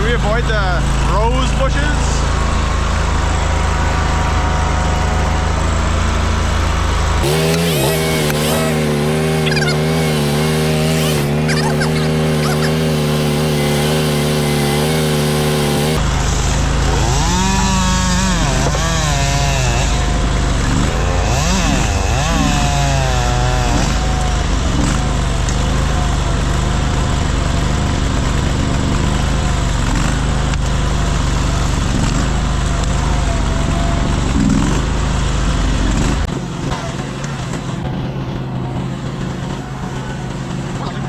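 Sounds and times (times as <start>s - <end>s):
small engine revving: 0.0s - 41.0s.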